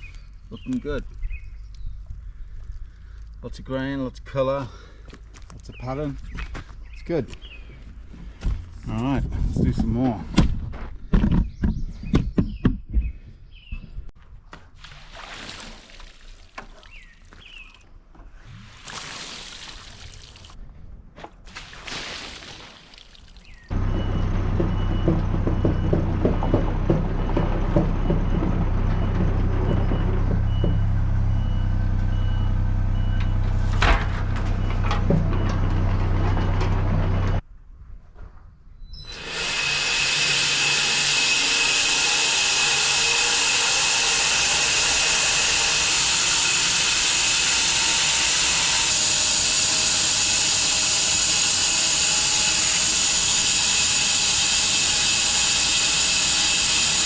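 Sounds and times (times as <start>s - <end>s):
bandsaw sawmill droning: 23.7s - 37.4s, 39.0s - 57.0s
hissing high whine: 44.2s - 57.0s.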